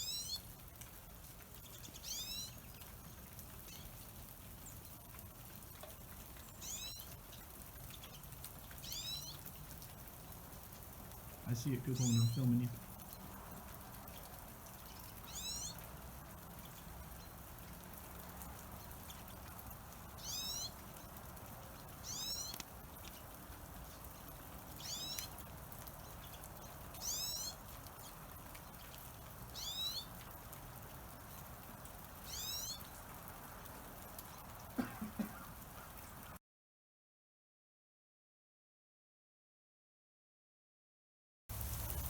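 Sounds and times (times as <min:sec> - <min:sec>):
small bird calling: 0:00.0 - 0:00.5, 0:01.5 - 0:05.1, 0:06.4 - 0:09.6, 0:11.5 - 0:12.9, 0:14.6 - 0:15.9, 0:18.8 - 0:33.4, 0:34.2 - 0:36.4
faint background hiss: 0:05.7 - 0:36.3.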